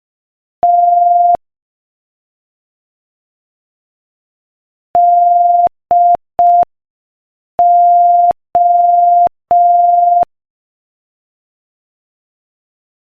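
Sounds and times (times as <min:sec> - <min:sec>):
morse code beeps: 0:00.6 - 0:01.4, 0:05.0 - 0:06.7, 0:07.6 - 0:10.3.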